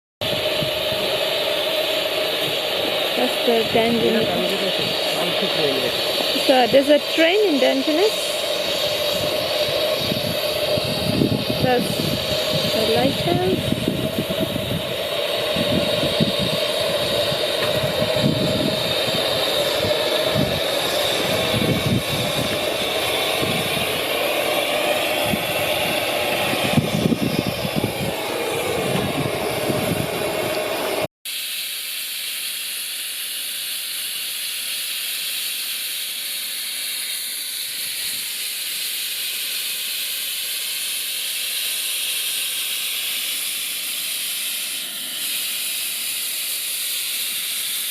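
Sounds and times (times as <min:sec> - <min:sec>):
miniature train rumbling: 0:00.2 - 0:31.1
steady whine: 0:00.2 - 0:31.1
steam hissing: 0:00.2 - 0:47.9.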